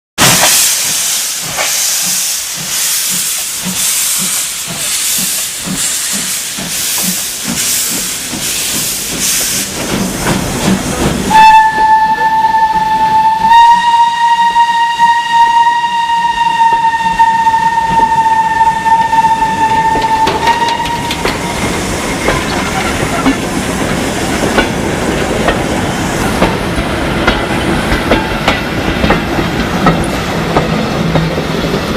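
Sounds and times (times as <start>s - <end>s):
steam locomotive chuffing: 0.2s - 31.9s
steam whistle: 11.3s - 21.3s.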